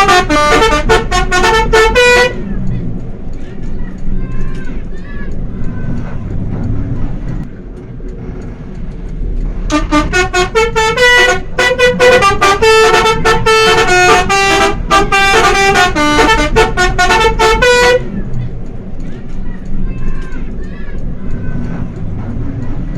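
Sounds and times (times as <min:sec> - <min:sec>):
musical bus air horn: 0:00.0 - 0:02.5, 0:09.7 - 0:18.2
low vehicle rumble: 0:00.0 - 0:22.9.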